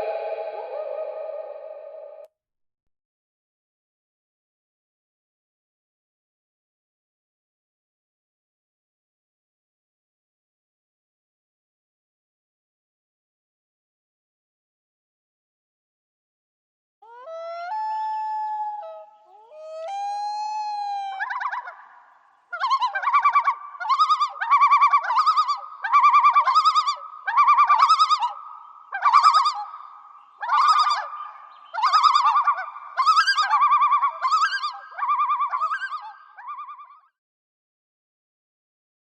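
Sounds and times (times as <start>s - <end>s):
loon wail calls: 0.0s - 2.2s, 17.0s - 21.9s, 22.6s - 37.0s
loon yodel calls: 0.0s - 2.2s, 22.6s - 29.8s, 30.4s - 36.9s.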